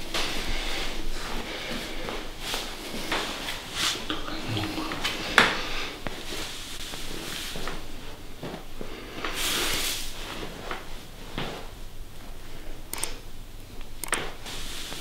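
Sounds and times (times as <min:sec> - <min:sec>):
rustling and handling noises: 0:00.0 - 0:12.8
sharp clicks: 0:12.9 - 0:13.2, 0:13.8 - 0:14.3.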